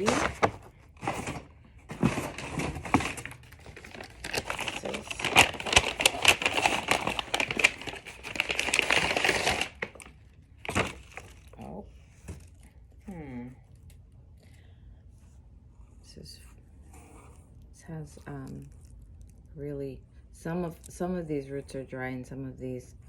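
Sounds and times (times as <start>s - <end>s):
packaging crinkling and rustling: 0.0s - 12.7s.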